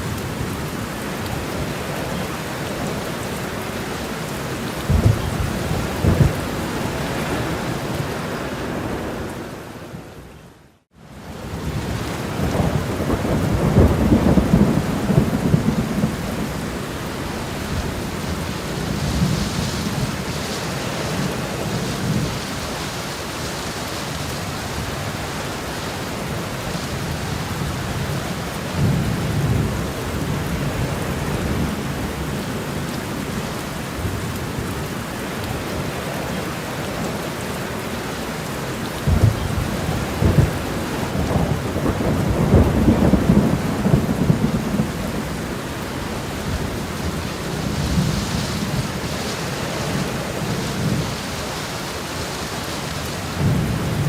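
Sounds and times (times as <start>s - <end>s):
heavy rain: 0.0s - 54.0s
low rolling thunder: 4.8s - 9.3s, 11.4s - 22.5s, 27.0s - 32.4s, 39.0s - 51.4s, 53.2s - 54.0s.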